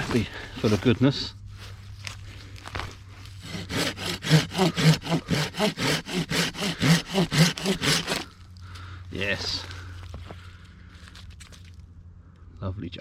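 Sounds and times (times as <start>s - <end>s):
hand saw cutting wood: 3.4s - 8.3s.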